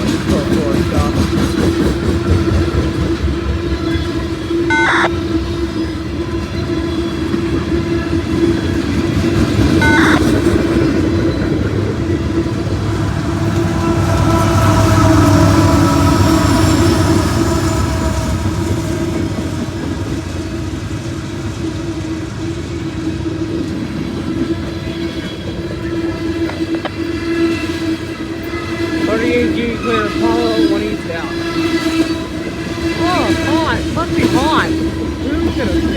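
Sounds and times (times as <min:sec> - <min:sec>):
freight train cars rolling past: 0:00.0 - 0:35.9.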